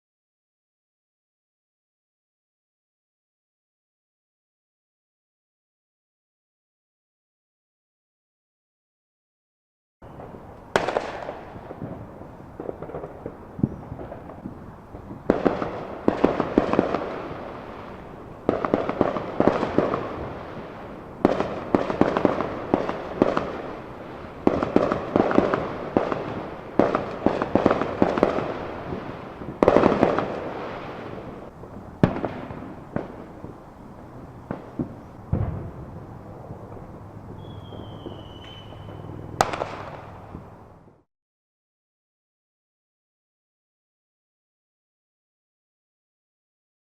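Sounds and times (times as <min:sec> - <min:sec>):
firecrackers cracking and popping: 0:10.0 - 0:40.5.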